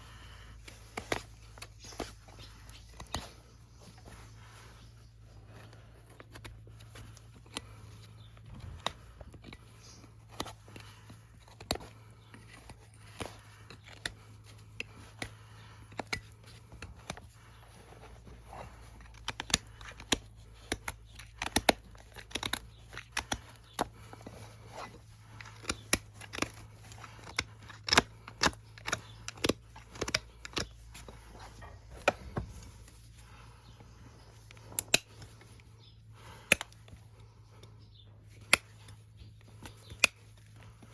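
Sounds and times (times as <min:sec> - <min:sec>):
low steady hum: 0:00.0 - 0:40.9
hoof trimmer snipping: 0:08.7 - 0:32.7.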